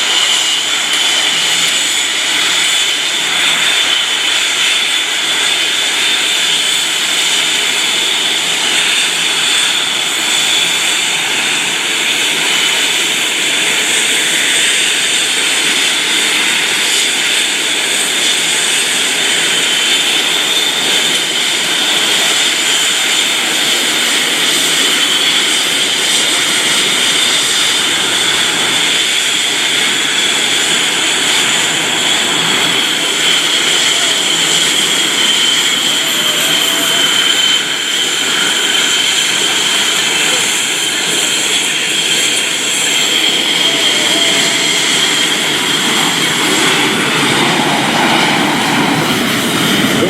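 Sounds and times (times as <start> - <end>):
jet engines with high whine: 0.0 - 50.0.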